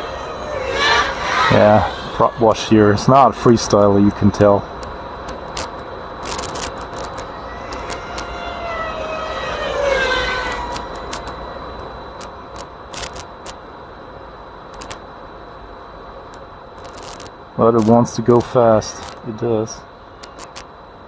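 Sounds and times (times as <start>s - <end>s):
drone motors whining: 0.0s - 13.5s.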